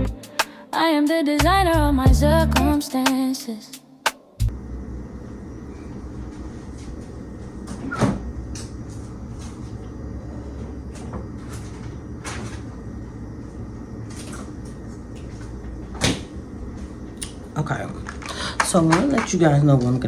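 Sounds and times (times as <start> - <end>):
steady low hum: 1.4 - 2.8, 4.4 - 20.0.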